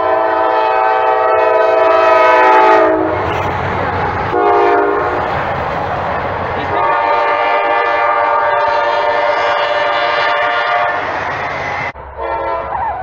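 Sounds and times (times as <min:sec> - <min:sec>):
locomotive air horn: 0:00.0 - 0:03.4, 0:04.3 - 0:05.2, 0:06.7 - 0:11.2, 0:12.2 - 0:13.0.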